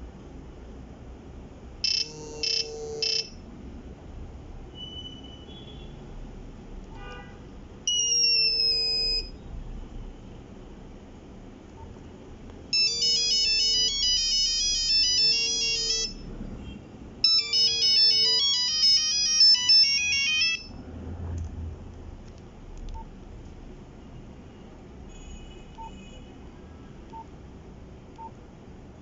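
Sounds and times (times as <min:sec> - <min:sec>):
beeping phone ringtone melody: 0:01.8 - 0:03.4, 0:07.9 - 0:09.3, 0:12.8 - 0:16.3, 0:17.2 - 0:20.8
phone vibrating buzz: 0:01.8 - 0:03.4.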